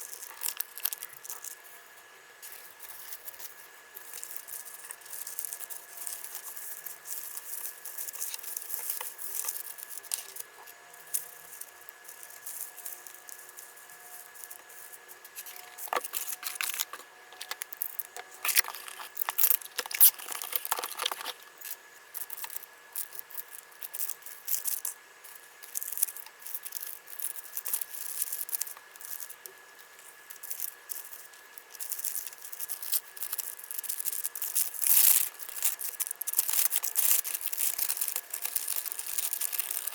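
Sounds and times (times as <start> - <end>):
packaging rustling and tearing: 0.0 - 1.6, 2.4 - 10.5, 15.3 - 24.9, 25.7 - 29.4, 30.3 - 39.9.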